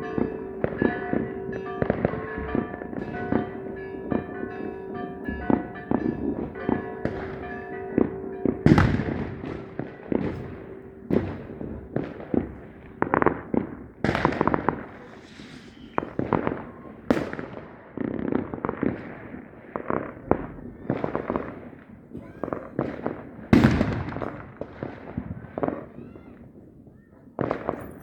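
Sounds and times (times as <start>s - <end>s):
fireworks bangs and pops: 0.0s - 26.7s, 27.4s - 28.0s.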